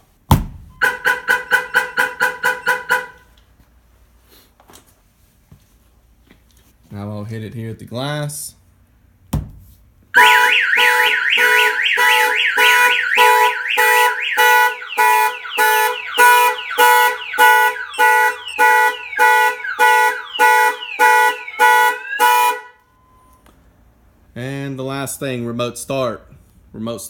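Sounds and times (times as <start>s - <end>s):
car alarm siren: 0.7s - 3.2s, 10.2s - 23.4s.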